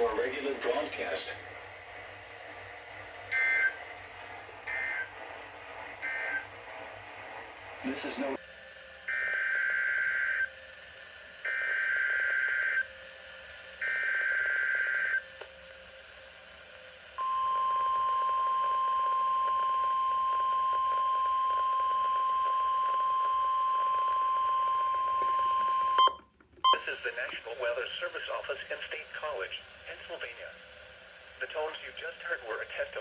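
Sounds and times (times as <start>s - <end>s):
steady warning alarm tone: 3.3s - 3.8s, 4.6s - 5.2s, 6.0s - 6.5s, 17.2s - 26.8s.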